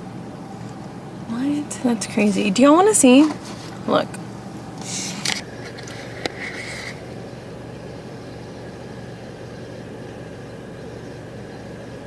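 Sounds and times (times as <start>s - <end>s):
car interior hum: 1.2s - 5.2s.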